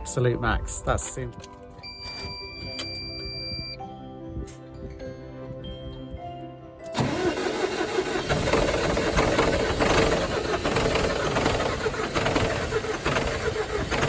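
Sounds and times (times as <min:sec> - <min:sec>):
diesel engine cranking: 0:06.8 - 0:14.0.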